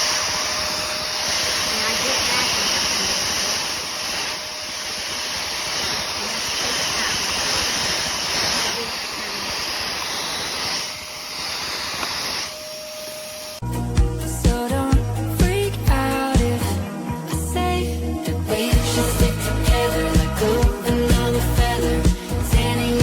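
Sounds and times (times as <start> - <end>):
canister vacuum running: 0.0 - 13.6.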